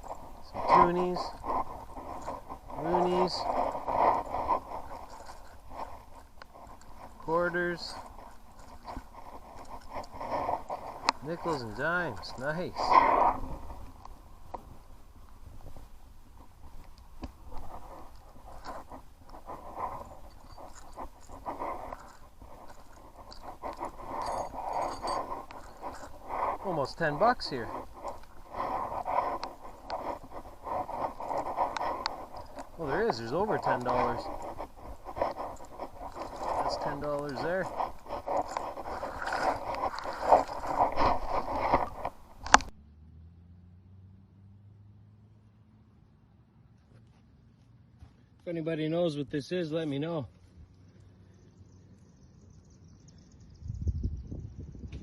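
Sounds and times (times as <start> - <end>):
coins rustling and scraping: 0.0 - 14.0, 16.4 - 42.7.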